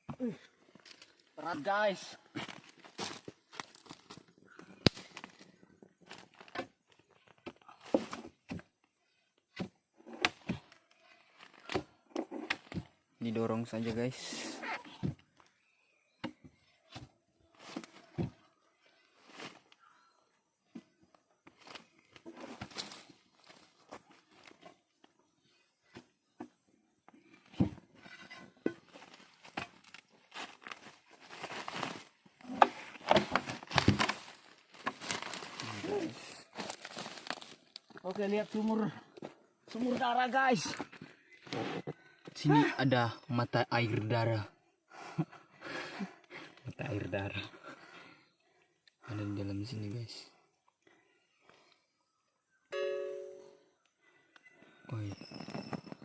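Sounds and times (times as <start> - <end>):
twigs snapping: 3.5 - 5.5
rustling and scuffing: 28.0 - 35.8
footsteps on dry leaves: 29.1 - 32.2, 34.0 - 38.7.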